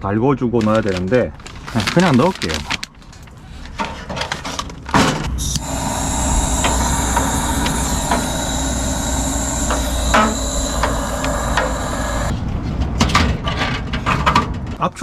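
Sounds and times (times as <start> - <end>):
fire hissing roar: 5.3 - 12.4.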